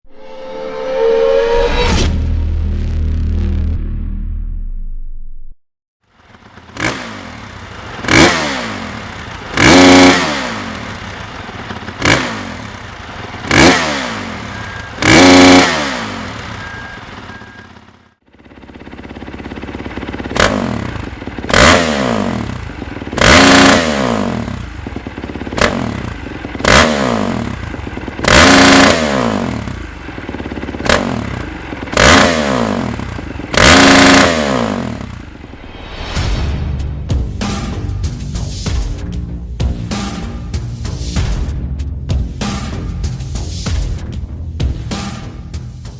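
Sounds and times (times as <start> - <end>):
dirt bike engine revving: 6.1 - 35.9.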